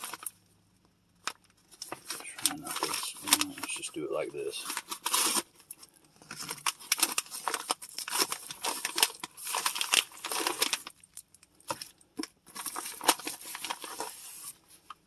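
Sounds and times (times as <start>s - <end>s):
envelope paper tearing: 0.0s - 0.3s, 1.8s - 5.6s, 6.3s - 11.0s, 12.5s - 14.6s
packaging crinkling: 0.0s - 0.4s, 1.2s - 15.0s.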